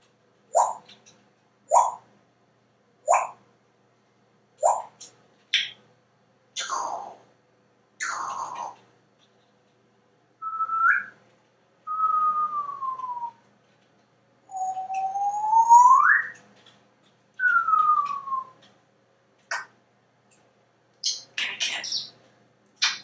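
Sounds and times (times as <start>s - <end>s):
parrot whistling glides: 0.5s - 0.8s, 1.7s - 2.0s, 3.1s - 3.4s, 10.5s - 11.2s, 11.9s - 13.4s, 14.5s - 16.4s, 17.4s - 18.6s.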